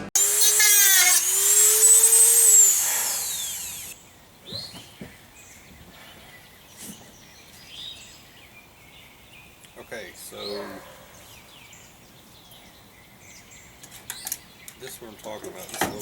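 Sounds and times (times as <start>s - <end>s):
rotary tool grinding metal: 0.0s - 4.0s.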